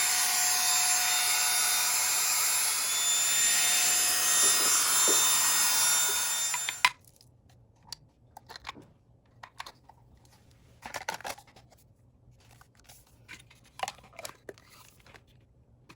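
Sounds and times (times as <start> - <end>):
vacuum cleaner motor: 0.0 - 6.9
clicks and rustles of handling: 6.9 - 15.9.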